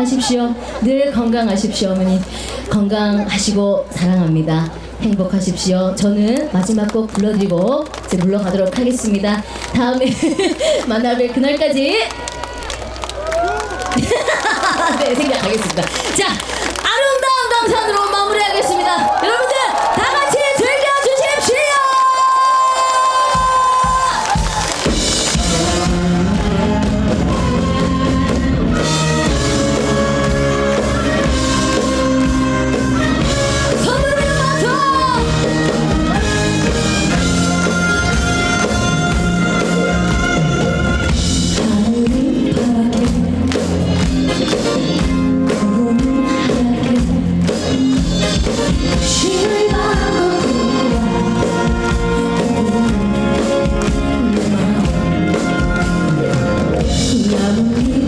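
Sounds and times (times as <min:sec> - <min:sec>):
live band playing: 0:23.2 - 0:58.0
woman singing: 0:33.6 - 0:36.3, 0:41.4 - 0:43.7, 0:45.4 - 0:48.2, 0:49.0 - 0:58.0.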